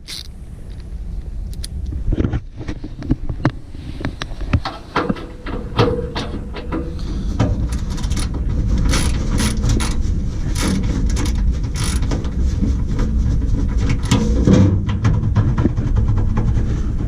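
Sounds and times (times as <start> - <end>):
low rumble: 0.0 - 17.0
tools and metal parts clattering: 4.7 - 12.3, 13.8 - 14.4.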